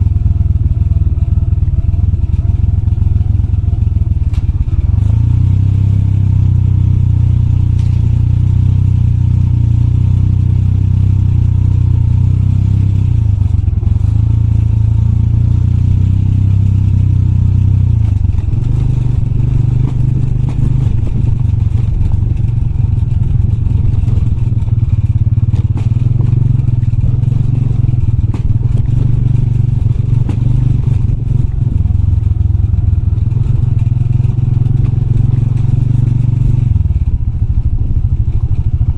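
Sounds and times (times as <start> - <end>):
motorbike engine running: 0.0 - 38.9.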